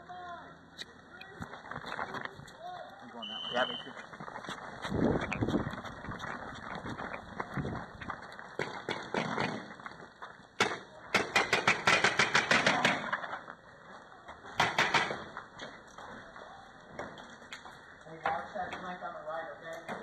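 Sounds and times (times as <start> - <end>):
paintball marker shots: 10.6 - 13.1, 14.6 - 15.3.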